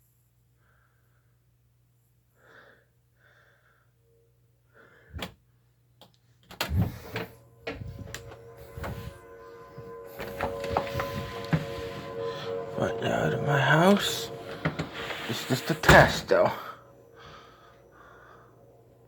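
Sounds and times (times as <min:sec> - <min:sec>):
faint breaths: 0:02.3 - 0:05.3, 0:16.5 - 0:19.0
closet door opening: 0:06.4 - 0:09.2, 0:10.1 - 0:16.5.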